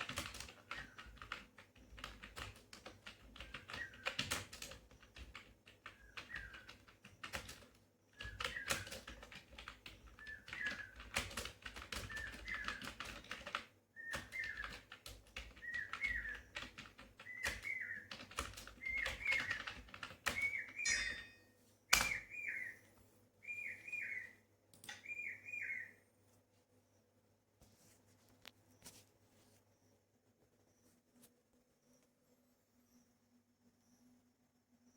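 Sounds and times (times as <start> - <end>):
computer keyboard typing: 0.0 - 20.8
bird chirping: 3.2 - 13.4, 14.0 - 26.1.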